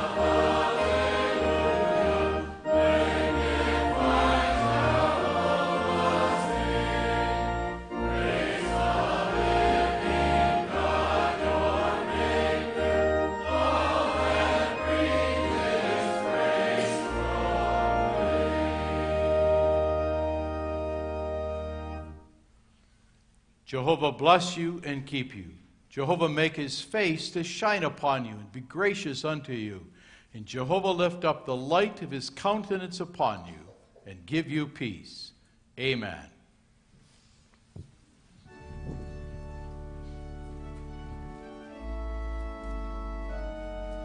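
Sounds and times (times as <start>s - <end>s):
congregation singing a hymn: 0.0s - 22.0s
organ bass notes: 0.0s - 22.3s, 38.5s - 44.0s
singers breathing: 29.9s - 30.3s.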